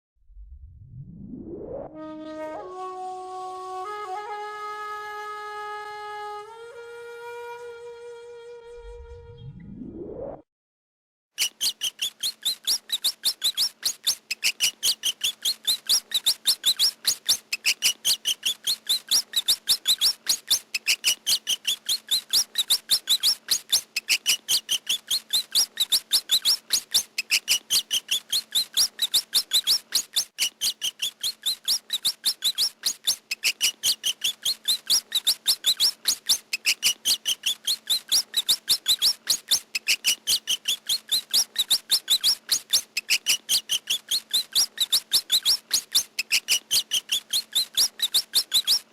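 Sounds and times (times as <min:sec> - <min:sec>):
rat squeaking: 0:11.4 - 0:48.9.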